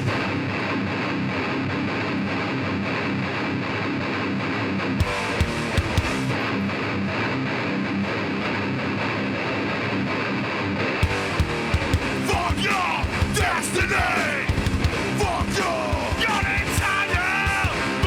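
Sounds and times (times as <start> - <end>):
heavy metal band playing: 0.0 - 8.6, 10.8 - 18.0
distorted electric guitar riff: 0.0 - 18.0
drum hits: 5.0 - 6.4, 11.0 - 18.0.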